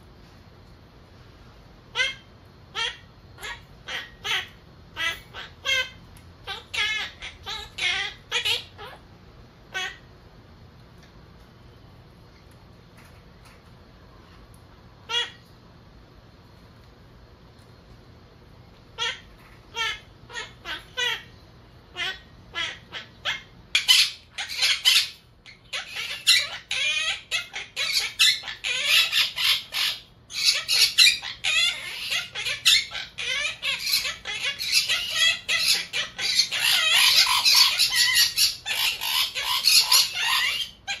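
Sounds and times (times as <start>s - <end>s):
parakeets chattering and squawking: 1.9s - 9.1s, 9.7s - 10.1s, 15.0s - 15.5s, 18.9s - 41.0s.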